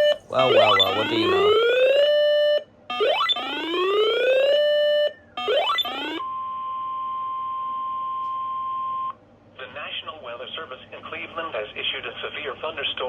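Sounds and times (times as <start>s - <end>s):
buzzy rising alarm tone: 0.0s - 6.3s
steady alarm tone: 0.0s - 9.1s.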